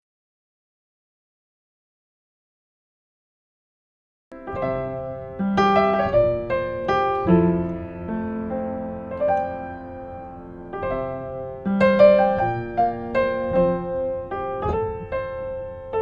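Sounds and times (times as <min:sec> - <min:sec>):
piano chords and notes: 0:04.3 - 0:16.0.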